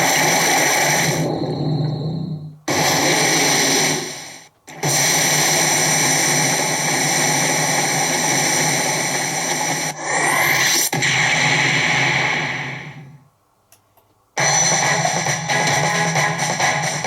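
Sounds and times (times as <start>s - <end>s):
pachinko machine hissing: 0.0s - 6.6s.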